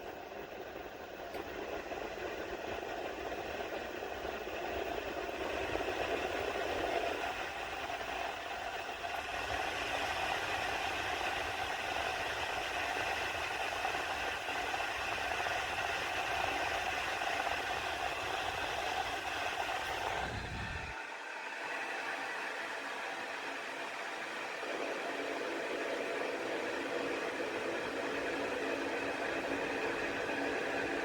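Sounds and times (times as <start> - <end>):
table fan whirring: 0.0 - 31.0.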